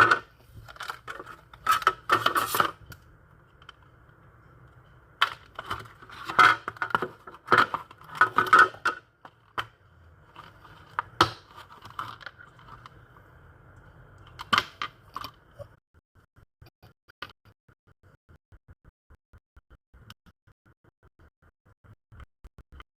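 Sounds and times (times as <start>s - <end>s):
plastic and cardboard rustling: 0.0s - 2.9s, 5.3s - 13.0s
faint steady hum: 0.0s - 16.5s.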